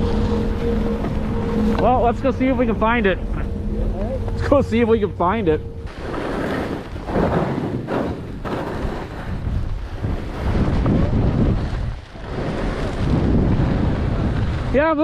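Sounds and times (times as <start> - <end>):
wind buffeting microphone: 0.0 - 15.0
skis scraping over snow: 5.9 - 15.0.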